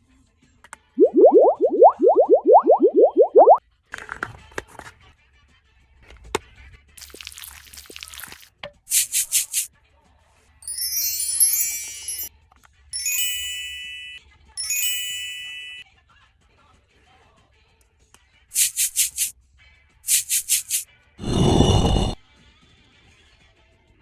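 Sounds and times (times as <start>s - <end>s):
cartoon clicks and swishes: 1.0s - 3.6s, 8.9s - 9.7s, 18.6s - 19.3s, 20.1s - 20.8s
sparkling chime twinkles: 10.6s - 12.3s, 13.0s - 15.8s.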